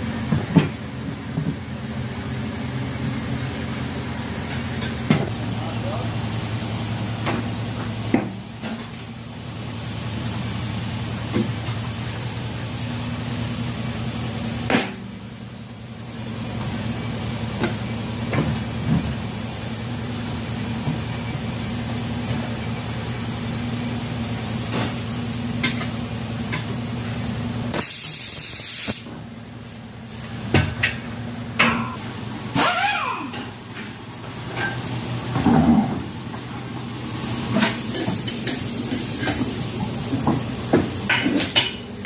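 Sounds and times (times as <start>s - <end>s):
steady machine hum: 0.0s - 27.8s, 29.0s - 42.0s
compressed air hiss: 27.7s - 29.1s.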